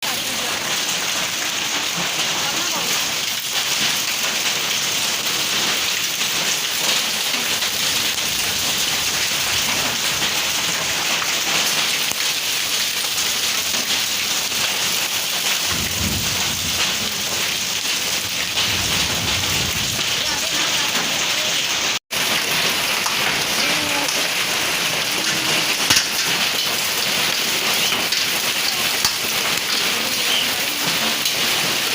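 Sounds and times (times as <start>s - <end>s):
heavy rain pouring: 0.0s - 31.9s
low rumble of thunder: 7.7s - 11.0s, 15.6s - 20.6s.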